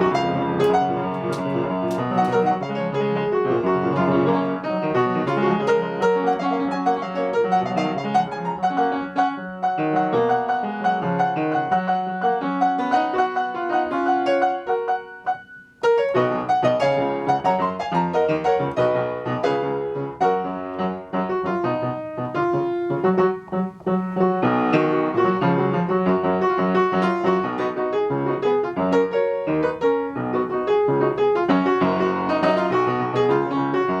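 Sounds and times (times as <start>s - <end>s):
piano music: 0.0s - 34.0s.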